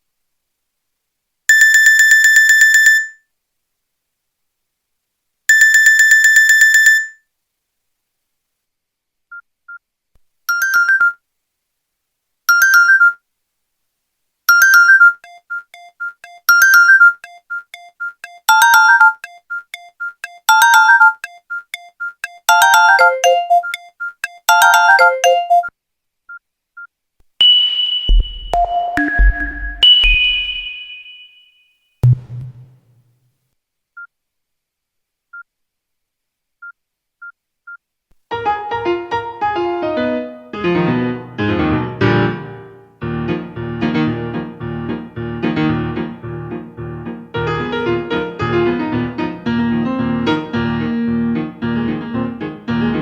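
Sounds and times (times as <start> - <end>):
buzzy trilling phone ring: 1.5 - 3.2, 5.5 - 7.2
synthesized ringtone melody: 14.5 - 25.7, 27.4 - 31.1.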